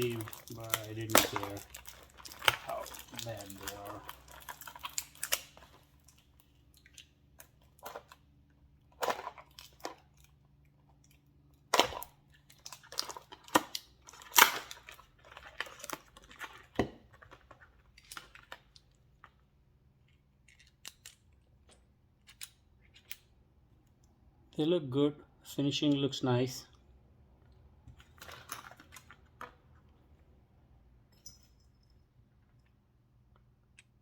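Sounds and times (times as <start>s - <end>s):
plastic packaging crinkling: 0.0s - 7.0s, 11.8s - 18.7s.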